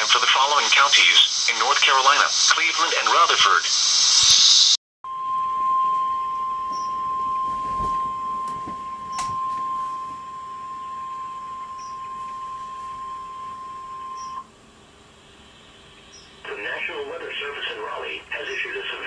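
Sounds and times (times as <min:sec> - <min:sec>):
steady high-pitched alarm tone: 0:05.1 - 0:18.9.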